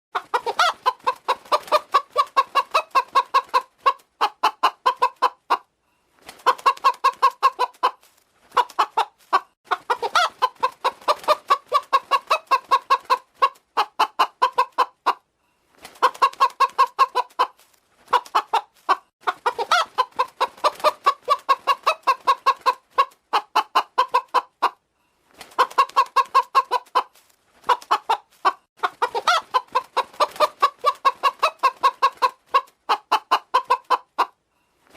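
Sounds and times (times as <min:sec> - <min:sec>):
hen clucking: 0:00.2 - 0:15.3, 0:16.0 - 0:24.8, 0:25.5 - 0:34.4.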